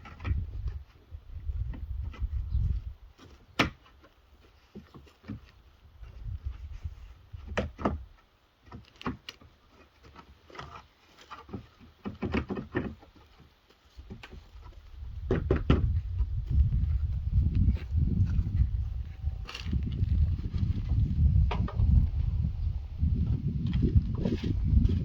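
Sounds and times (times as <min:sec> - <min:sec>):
plastic panels knocking and clicking: 0:07.5 - 0:13.5, 0:15.2 - 0:16.0.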